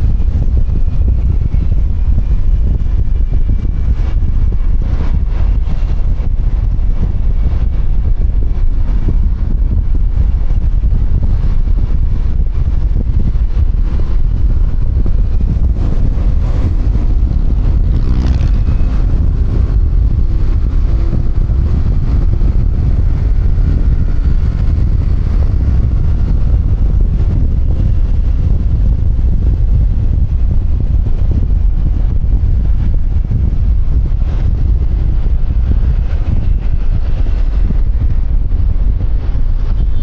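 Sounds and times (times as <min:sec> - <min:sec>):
low hum: 0:00.0 - 0:40.0
road traffic: 0:00.0 - 0:40.0
wind rushing over microphone: 0:00.0 - 0:40.0
scooter engine running: 0:12.9 - 0:30.0.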